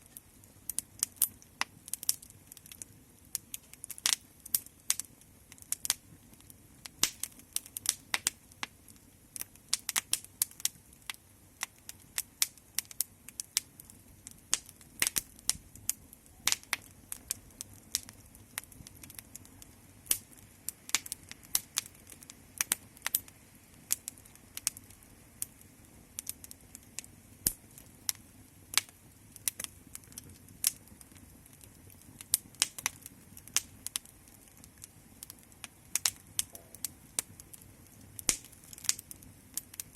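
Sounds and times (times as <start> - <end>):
wood fire crackling and popping: 0.0 - 39.9.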